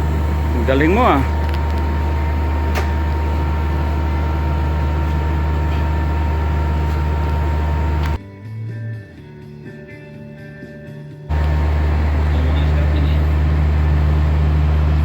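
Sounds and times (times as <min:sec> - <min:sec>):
air conditioner humming: 0:00.0 - 0:08.2, 0:11.3 - 0:15.0
thin steady whine: 0:00.0 - 0:08.2, 0:11.3 - 0:15.0.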